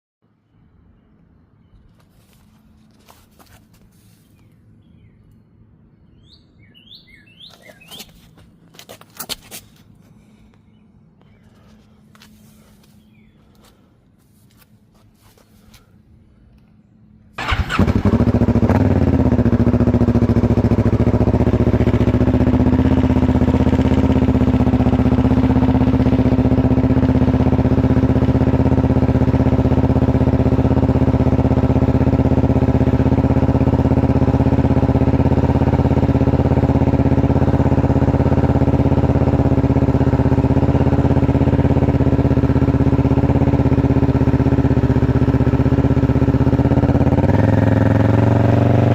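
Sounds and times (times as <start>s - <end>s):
motorcycle engine idling: 15.6s - 48.9s.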